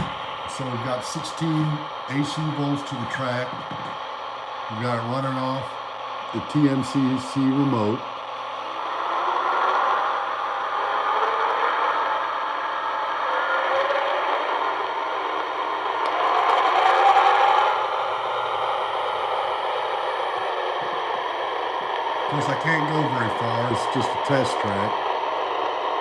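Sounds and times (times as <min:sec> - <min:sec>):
steady low hum: 0:00.0 - 0:26.0
model train motor whir: 0:06.6 - 0:26.0.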